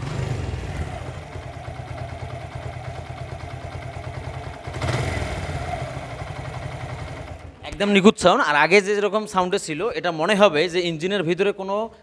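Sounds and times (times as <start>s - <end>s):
motorcycle engine idling: 0.0s - 8.0s.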